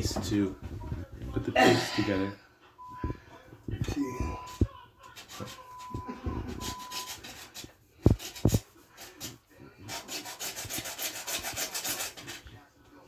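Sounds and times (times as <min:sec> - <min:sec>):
hand tool rasping strokes: 0:04.4 - 0:12.4.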